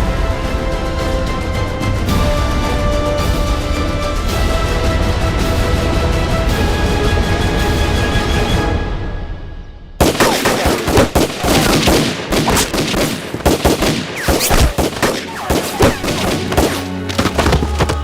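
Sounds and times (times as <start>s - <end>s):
background music: 0.0s - 12.3s, 14.0s - 18.0s
rapid gunfire: 10.0s - 17.4s.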